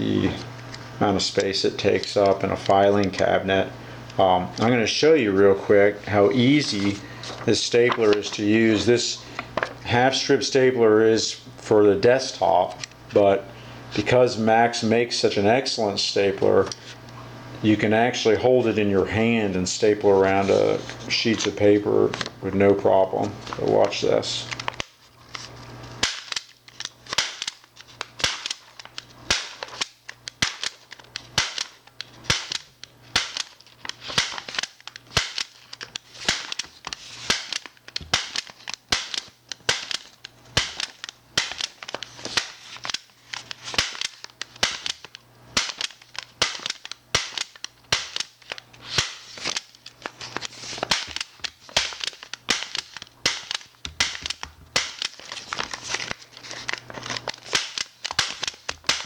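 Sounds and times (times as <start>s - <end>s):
stapler clacking: 26.0s - 49.8s, 50.4s - 59.0s.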